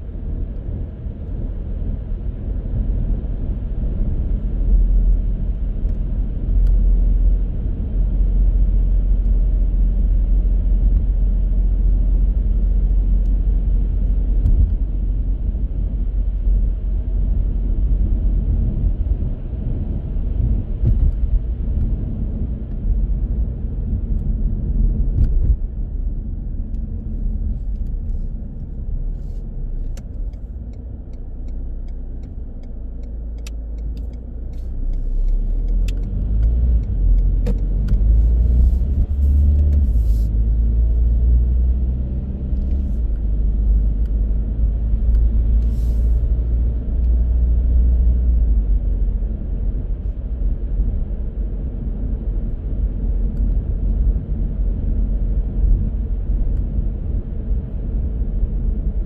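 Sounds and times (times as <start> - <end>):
car engine and tyres rumbling: 0.0 - 59.0
faint ticks: 29.8 - 38.1.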